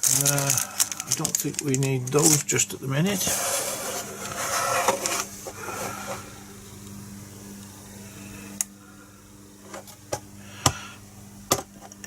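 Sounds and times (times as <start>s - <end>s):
handling of parts and packaging: 0.0s - 6.3s
steady low hum: 0.0s - 12.0s.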